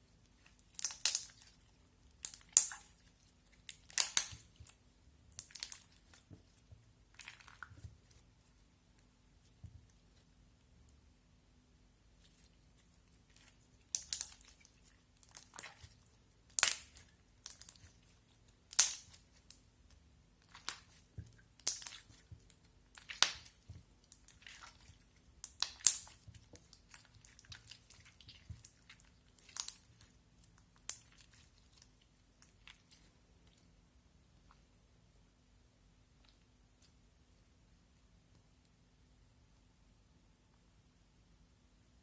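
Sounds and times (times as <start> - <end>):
slime crackling pops: 3.7 - 4.5, 16.5 - 17.9, 18.7 - 19.5, 21.6 - 24.8, 25.4 - 28.8.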